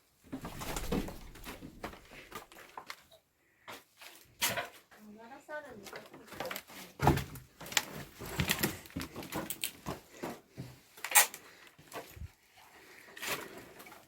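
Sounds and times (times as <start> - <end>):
debris clattering and crunching: 0.3 - 3.1.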